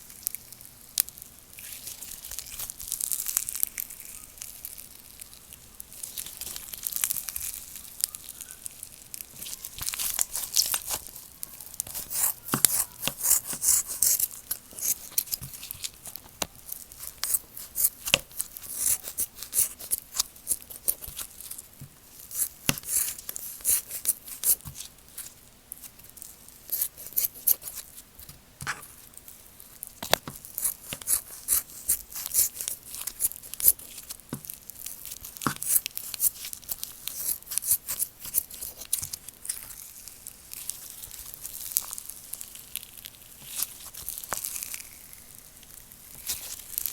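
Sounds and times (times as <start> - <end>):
slime squeezed crackling and popping: 0.0 - 46.9.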